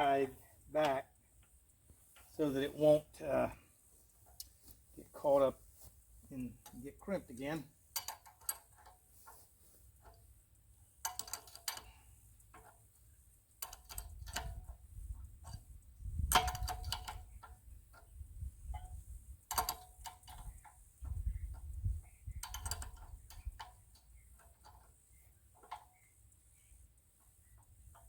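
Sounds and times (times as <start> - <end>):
wrench clicking on metal fitting: 11.0 - 11.9, 13.6 - 14.6, 22.3 - 24.8.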